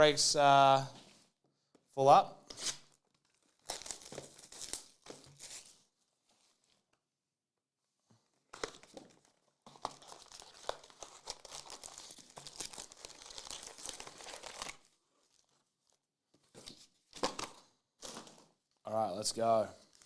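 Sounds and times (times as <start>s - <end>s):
wrapper crinkling and tearing: 2.6s - 5.8s, 8.6s - 15.7s.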